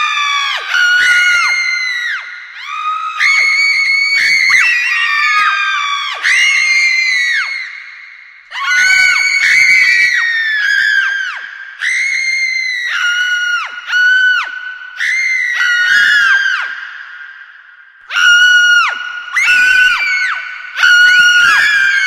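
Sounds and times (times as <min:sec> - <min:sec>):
girls screaming: 0:18.2 - 0:22.0.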